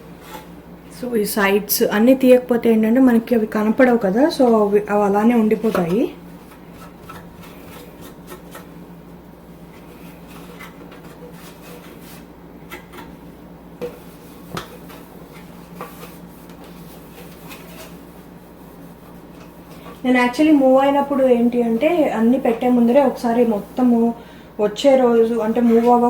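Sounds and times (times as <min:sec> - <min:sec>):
rag rubbing fridge shelves: 0:00.0 - 0:00.6, 0:03.0 - 0:08.8, 0:09.6 - 0:26.0
steady low hum: 0:00.0 - 0:26.0.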